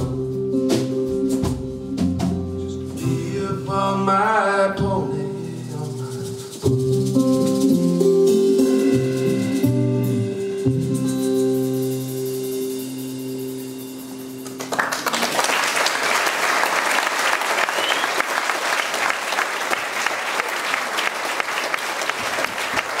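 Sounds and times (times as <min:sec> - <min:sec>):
audience applause: 0:14.4 - 0:23.0.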